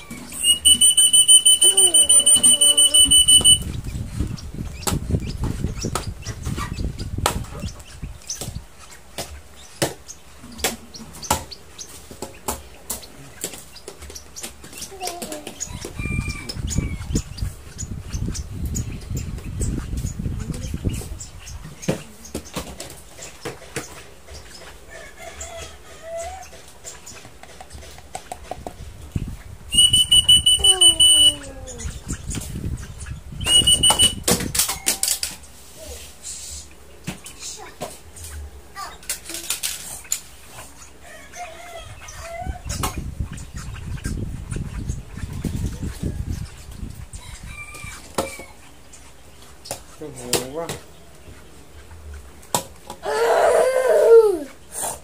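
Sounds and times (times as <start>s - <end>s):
lovebirds chirping faintly: 0.0s - 28.6s, 29.2s - 52.5s
electronic beeper high beeps: 0.4s - 3.7s, 29.8s - 31.4s, 33.4s - 34.2s.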